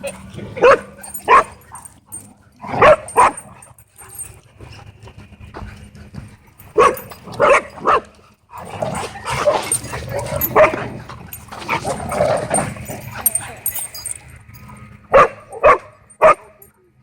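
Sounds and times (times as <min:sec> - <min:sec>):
dog barking: 0:00.6 - 0:01.6, 0:02.8 - 0:03.4, 0:06.8 - 0:08.1, 0:10.5 - 0:10.8, 0:15.1 - 0:16.6.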